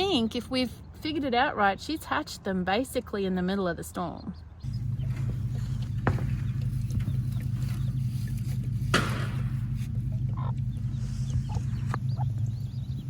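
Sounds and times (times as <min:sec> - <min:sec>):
chicks peeping: 0:04.2 - 0:13.0
hen clucking: 0:04.3 - 0:13.0
low hum: 0:04.6 - 0:13.0.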